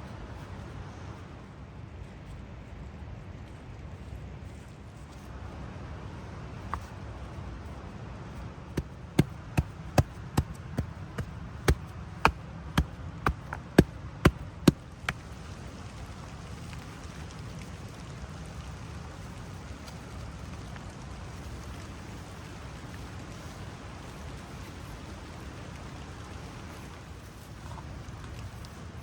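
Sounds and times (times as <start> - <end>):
sharp knocks: 8.8 - 15.2.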